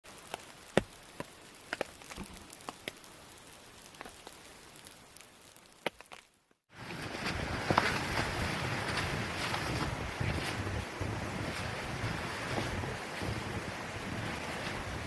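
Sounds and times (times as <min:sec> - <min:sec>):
faint rain hiss: 0:00.0 - 0:15.0
raindrops ticking: 0:00.1 - 0:06.4.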